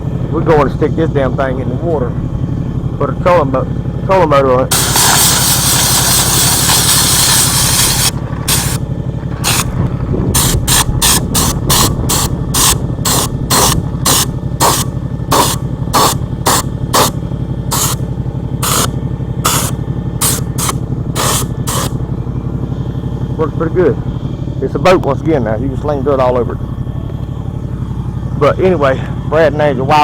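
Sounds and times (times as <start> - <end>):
steady engine hum: 0.0 - 30.0
spray gun hissing: 4.7 - 8.8, 9.4 - 9.7, 10.4 - 17.1, 17.7 - 18.0, 18.6 - 22.0.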